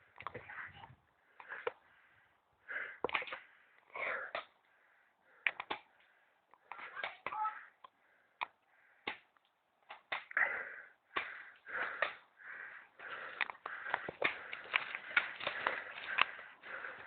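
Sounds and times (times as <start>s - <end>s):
sharp clicks and snaps: 5.4s - 5.9s, 13.3s - 16.4s
rustling breathy noise: 10.2s - 17.0s.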